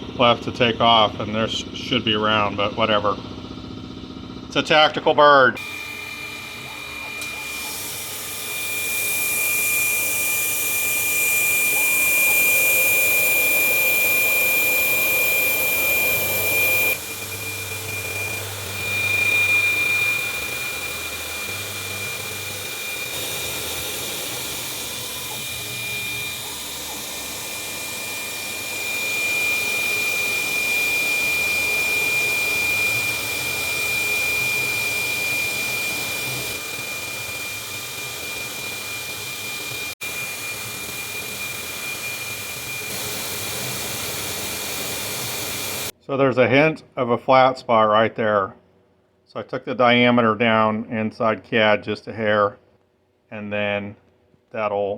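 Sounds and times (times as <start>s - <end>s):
milling machine spindle whine: 0.0s - 45.9s
hiss of cutting: 6.8s - 45.9s.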